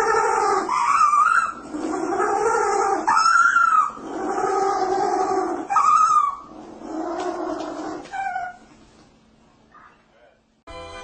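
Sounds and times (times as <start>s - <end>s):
animal screaming: 0.0s - 8.7s.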